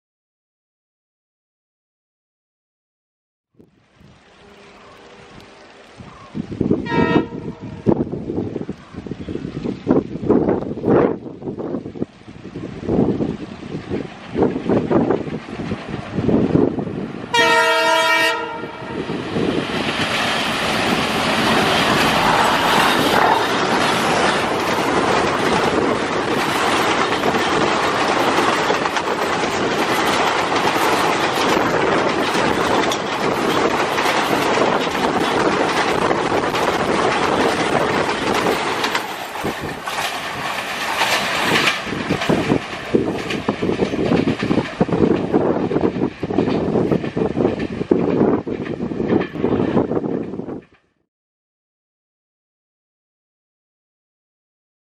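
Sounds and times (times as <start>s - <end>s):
train engine noise: 3.9s - 51.0s
locomotive horn blast: 6.8s - 8.0s, 17.3s - 19.1s
wheels clattering over rail joints: 19.1s - 50.9s.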